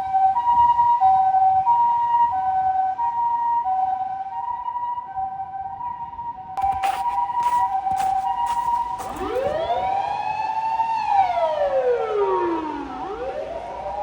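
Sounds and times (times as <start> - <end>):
two-tone ambulance siren: 9.3 - 14.0
wailing siren: 9.3 - 14.0.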